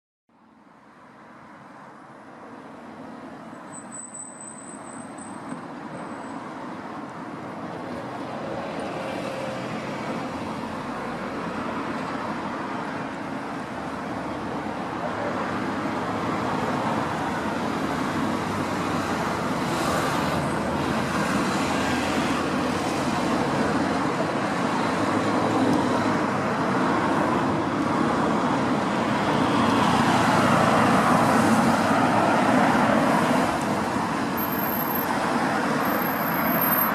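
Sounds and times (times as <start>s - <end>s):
road traffic hum: 0.3s - 36.9s.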